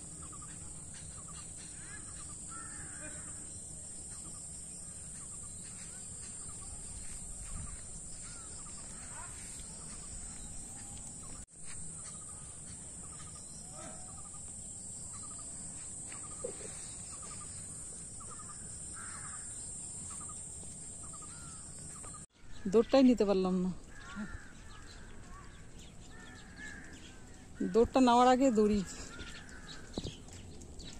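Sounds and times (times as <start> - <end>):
crows cawing: 1.3 - 3.5, 7.0 - 10.3, 18.2 - 20.4, 21.0 - 22.7, 23.8 - 30.2.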